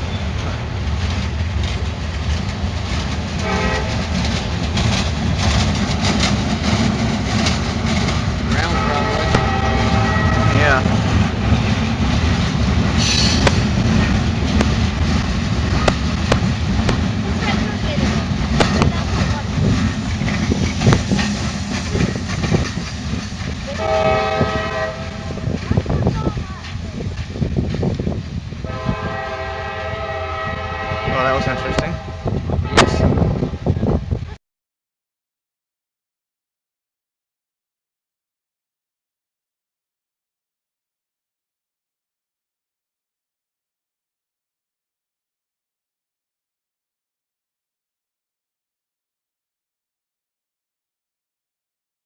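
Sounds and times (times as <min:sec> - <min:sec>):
freight train rumbling by: 0:00.0 - 0:34.4
wheels clicking over rails: 0:00.1 - 0:09.4, 0:10.9 - 0:23.8
train horn chord: 0:03.4 - 0:04.0, 0:08.6 - 0:10.8, 0:23.7 - 0:25.5, 0:28.6 - 0:33.3.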